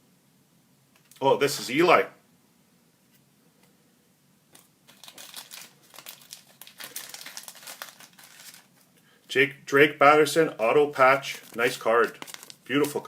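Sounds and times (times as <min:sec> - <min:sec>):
plastic packaging crinkling: 0:04.6 - 0:09.0, 0:11.0 - 0:13.0.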